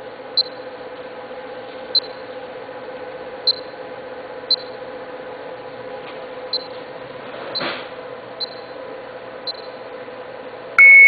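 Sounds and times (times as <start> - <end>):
machine electrical hum: 0.0 - 11.0
short high electronic beeps: 10.8 - 11.0.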